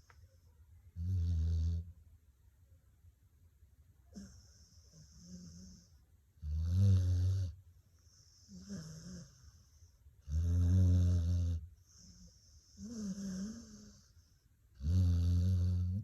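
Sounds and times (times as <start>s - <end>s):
soft hissing breaths: 0.0s - 2.0s, 4.0s - 6.4s, 7.1s - 11.0s, 11.6s - 14.8s
dog snoring: 1.0s - 1.9s, 4.1s - 14.2s, 14.8s - 16.0s.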